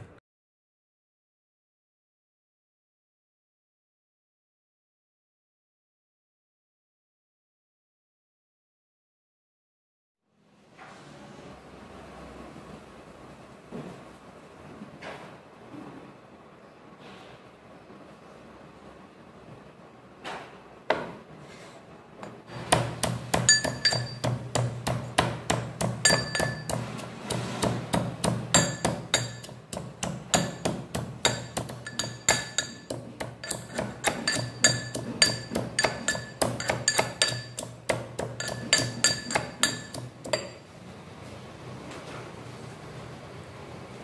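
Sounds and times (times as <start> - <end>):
pestle pounding in a mortar: 22.5 - 40.6.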